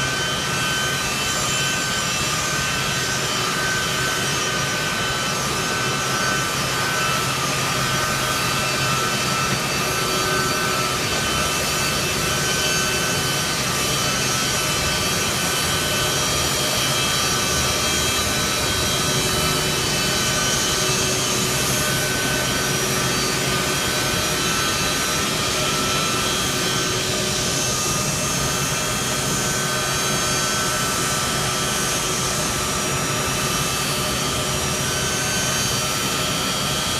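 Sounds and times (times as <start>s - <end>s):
jet engines whining at low thrust: 0.0s - 36.9s.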